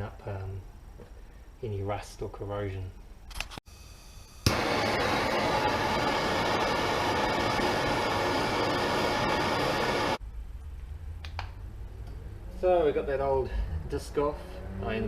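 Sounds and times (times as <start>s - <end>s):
gas torch hissing: 4.4s - 10.2s.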